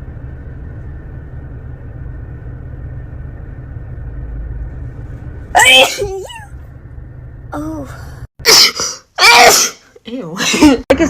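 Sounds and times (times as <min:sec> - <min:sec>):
low background rumble: 0:00.0 - 0:08.6
faint steady hum: 0:00.0 - 0:09.2.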